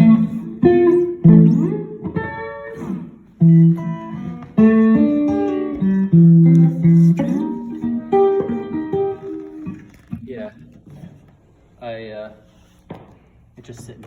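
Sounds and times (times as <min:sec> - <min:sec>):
guitar notes and chords: 0:00.0 - 0:11.2.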